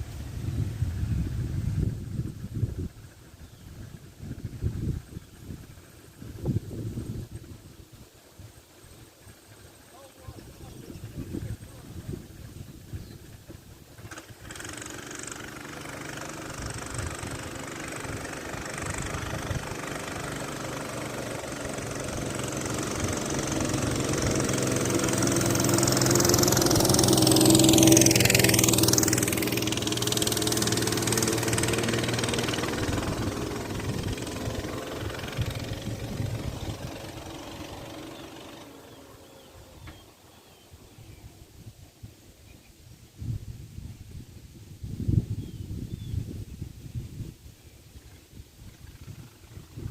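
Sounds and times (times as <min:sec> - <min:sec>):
mini bike engine passing by: 0:13.2 - 0:41.6, 0:48.7 - 0:49.9.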